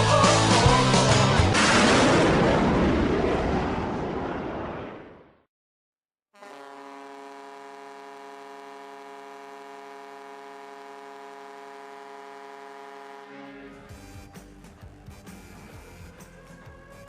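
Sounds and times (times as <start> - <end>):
arena goal horn: 6.4 - 16.3
arena music: 13.0 - 17.0.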